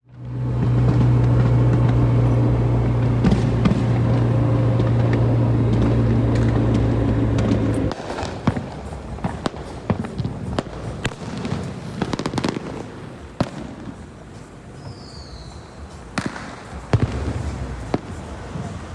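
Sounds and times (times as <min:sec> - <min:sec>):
loud steady low hum: 0:00.0 - 0:09.2
fireworks popping and crackling: 0:00.1 - 0:18.9.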